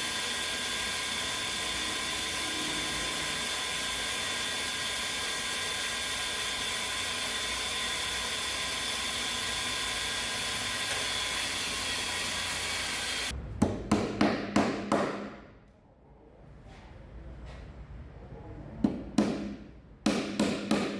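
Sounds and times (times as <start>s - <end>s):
electric drill whining: 0.0s - 13.3s.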